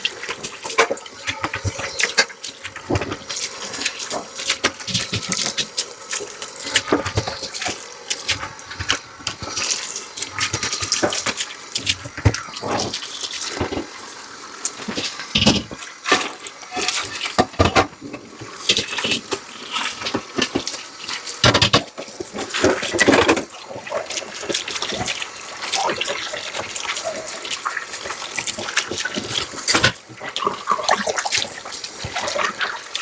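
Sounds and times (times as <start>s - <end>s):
running tap water splashing: 0.0s - 33.0s
dishes clattering: 15.4s - 15.8s.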